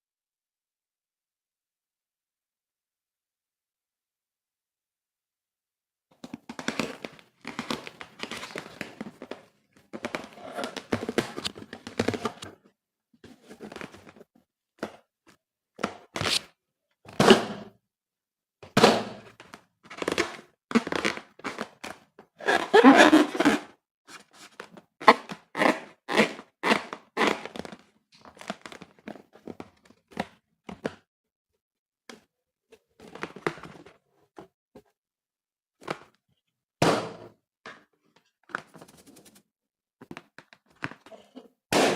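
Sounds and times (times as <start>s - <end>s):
balloon crinkling and thunking: 6.1s - 12.7s, 18.6s - 31.1s, 36.8s - 37.9s.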